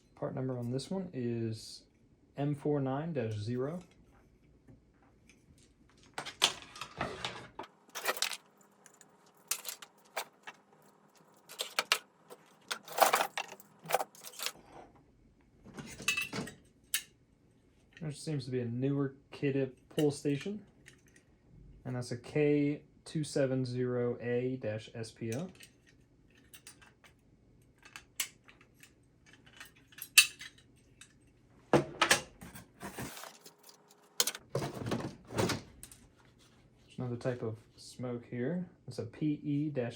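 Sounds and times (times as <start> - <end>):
metal parts clinking and rattling: 7.9 - 14.6, 15.8 - 17.1, 25.4 - 27.2, 27.8 - 31.2, 32.8 - 34.4.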